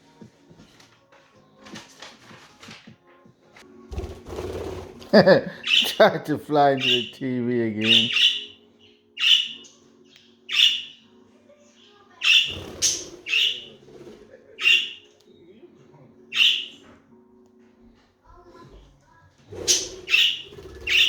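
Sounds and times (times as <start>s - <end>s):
budgerigars squawking: 5.6s - 9.7s, 10.5s - 11.0s, 12.2s - 15.1s, 16.3s - 16.8s, 19.6s - 21.0s.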